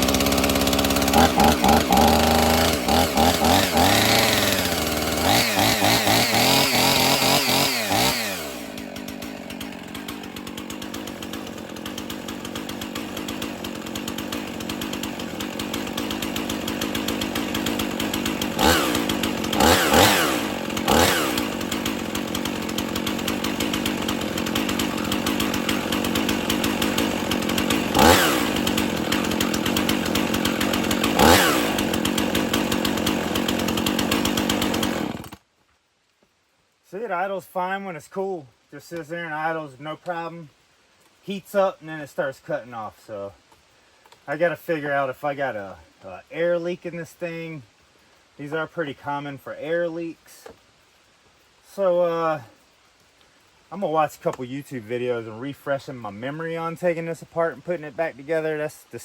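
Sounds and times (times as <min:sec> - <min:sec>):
chainsaw engine running and idling: 0:00.0 - 0:35.5.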